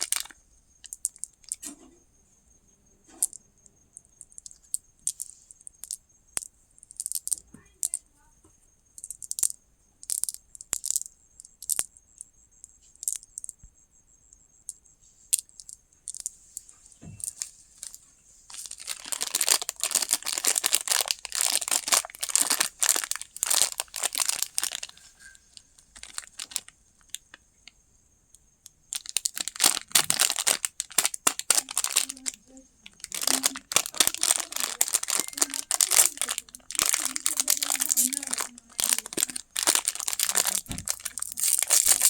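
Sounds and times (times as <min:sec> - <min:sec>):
plastic wrapper crinkling and tearing: 0:00.0 - 0:00.4, 0:18.5 - 0:25.2, 0:25.9 - 0:27.3, 0:28.9 - 0:42.0.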